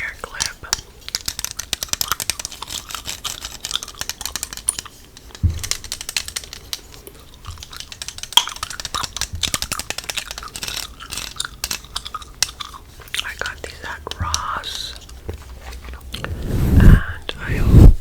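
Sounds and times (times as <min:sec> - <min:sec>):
hair being brushed: 0:16.2 - 0:18.0.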